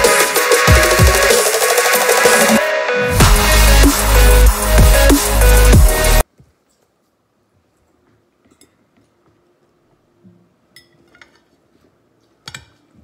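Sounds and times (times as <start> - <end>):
cutlery clinking against dishes: 10.8 - 11.5.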